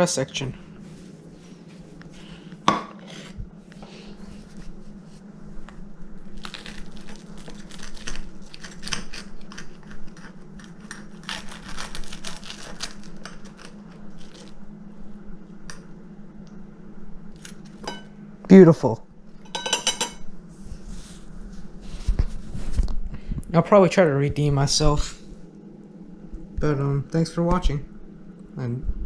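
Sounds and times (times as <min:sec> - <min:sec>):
steady low hum: 0:00.0 - 0:29.0
knife sawing crackly toast: 0:06.5 - 0:14.5.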